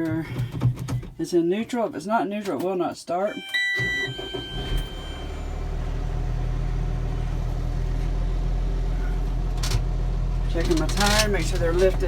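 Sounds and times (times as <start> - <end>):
tractor engine idling: 3.8 - 12.0.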